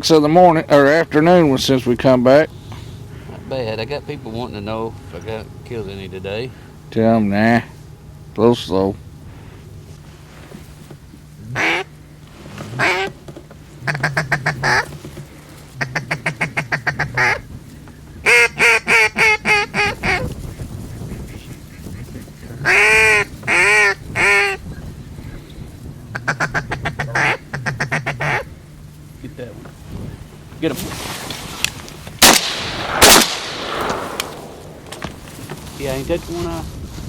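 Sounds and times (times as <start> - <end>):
duck call quacks: 11.5 - 11.9, 12.8 - 13.2, 13.8 - 15.0, 15.7 - 17.5, 18.2 - 20.3, 20.9 - 24.6, 26.1 - 28.5.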